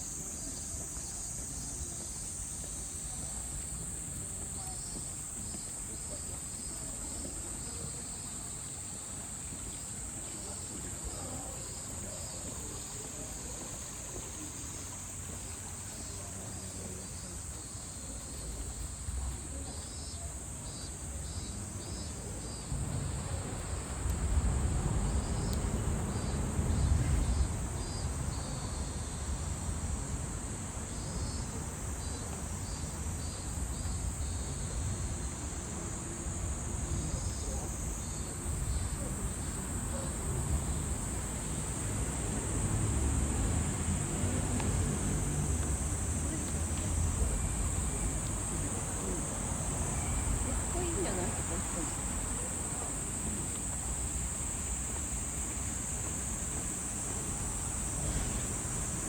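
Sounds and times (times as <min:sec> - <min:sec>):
insect chorus drone: 0:00.0 - 0:59.0
pulsing insect calls: 0:00.0 - 0:59.0.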